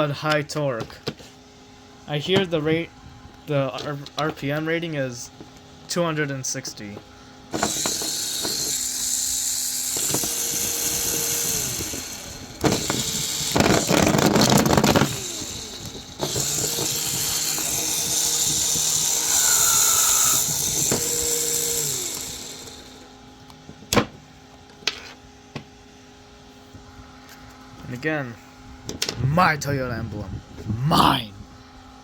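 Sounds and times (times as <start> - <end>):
electric motor whining: 7.6 - 23.1.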